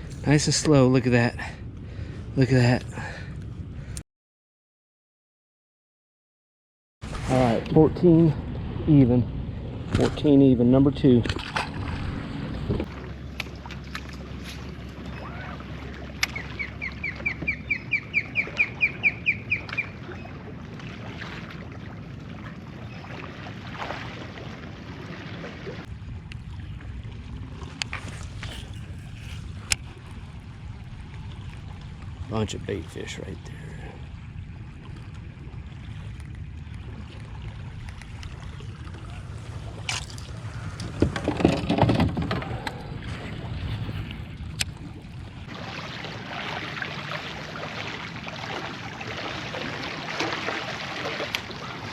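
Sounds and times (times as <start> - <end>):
low rumble of wind and water: 0.0 - 4.0, 7.0 - 51.9
low steady hum: 7.1 - 51.9
bird calling: 15.0 - 20.4
gear knocking against hull: 40.7 - 42.9.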